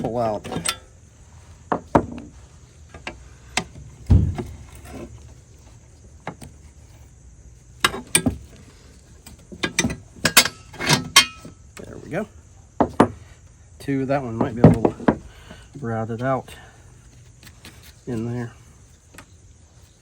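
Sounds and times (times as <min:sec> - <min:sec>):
hand tools clinking on metal parts: 0:00.0 - 0:01.0, 0:09.5 - 0:12.0
heavy thump: 0:03.6 - 0:05.1.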